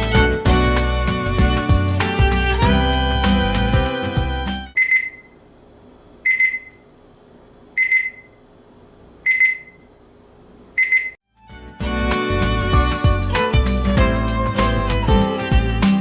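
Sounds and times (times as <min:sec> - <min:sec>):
thermometer alarm beeping: 0:04.8 - 0:05.4, 0:06.2 - 0:06.9, 0:07.8 - 0:08.4, 0:09.2 - 0:09.9, 0:10.8 - 0:11.2.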